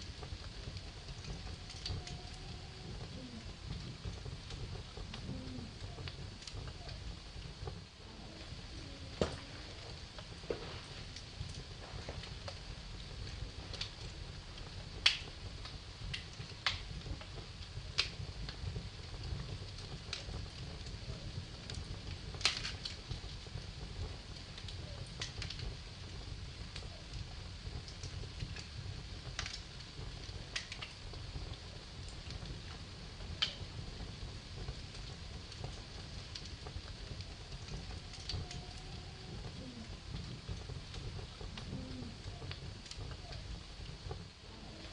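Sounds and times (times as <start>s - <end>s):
logs popping: 0.0s - 14.1s, 15.0s - 17.1s, 21.8s - 23.0s, 27.7s - 44.9s
fire flames rumbling: 0.0s - 44.9s.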